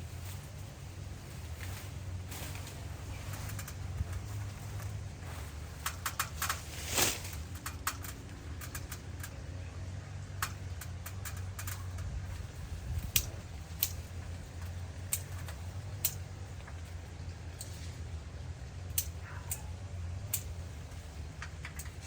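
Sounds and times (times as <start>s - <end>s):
steady low hum: 0.0s - 22.0s
irregular sharp clicks and snaps: 5.8s - 6.6s, 7.3s - 9.4s, 10.3s - 12.1s, 13.0s - 16.8s, 18.9s - 19.6s, 20.3s - 20.5s.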